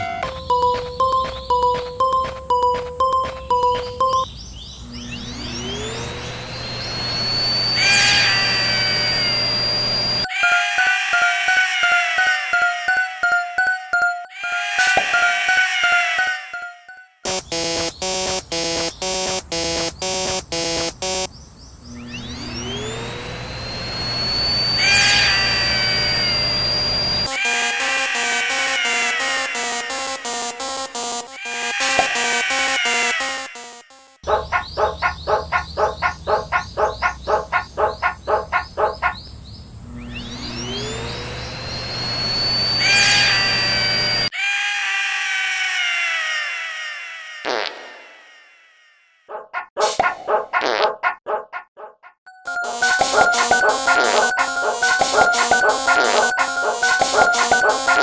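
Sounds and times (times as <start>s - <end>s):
level crossing alarm strikes: 0.0s - 4.3s, 4.9s - 11.4s, 17.2s - 21.3s, 22.0s - 34.2s, 40.2s - 44.3s, 52.3s - 58.0s
level-crossing bell ringing: 0.2s - 4.3s, 52.3s - 58.0s
falling sweep of tones: 3.1s - 11.3s, 21.9s - 33.6s, 39.9s - 44.3s
rising whine into high tone: 4.8s - 10.3s, 17.3s - 21.3s, 21.9s - 33.8s, 39.8s - 44.3s.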